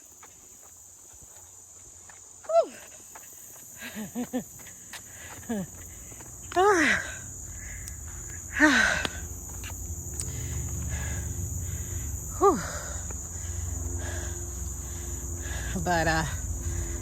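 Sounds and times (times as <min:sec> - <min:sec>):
crickets trilling: 0:00.0 - 0:17.0
low rumble: 0:07.2 - 0:17.0.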